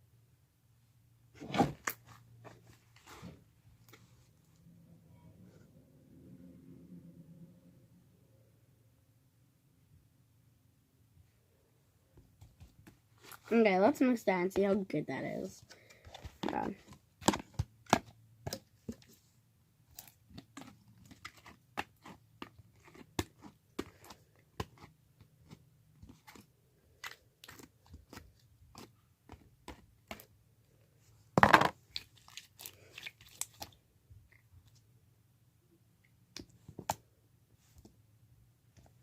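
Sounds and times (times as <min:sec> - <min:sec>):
loud slime squelch: 0:31.8 - 0:33.8.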